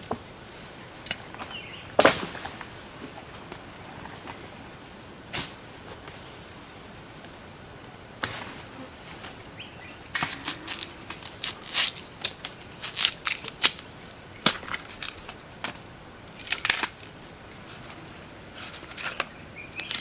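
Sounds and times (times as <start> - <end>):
dry plants cracking and snapping: 10.1 - 17.1.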